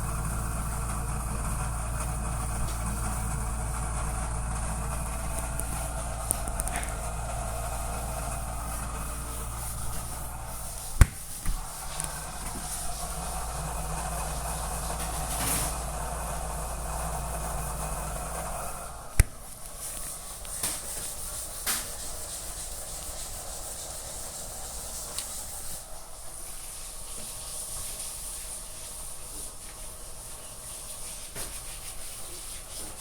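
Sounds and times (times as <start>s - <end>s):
refrigerator humming and whirring: 0.0s - 26.8s
sharp click: 19.2s - 19.5s.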